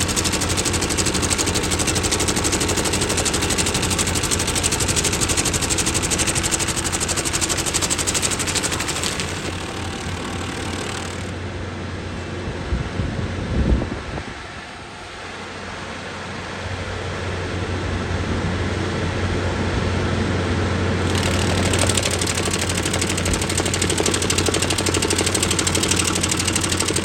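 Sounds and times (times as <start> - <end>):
stump grinder cutter teeth chatter: 0.0 - 11.4, 21.0 - 27.0
skid steer engine: 0.0 - 12.3, 19.2 - 27.0.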